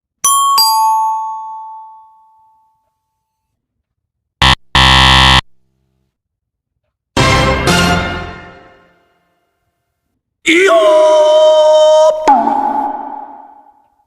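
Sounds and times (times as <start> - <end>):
harsh buzzer: 4.4 - 5.6.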